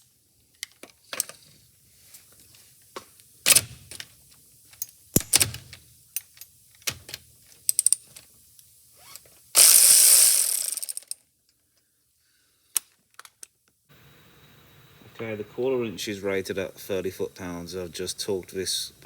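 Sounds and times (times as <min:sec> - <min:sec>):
electric ratchet running: 0:09.6 - 0:11.2.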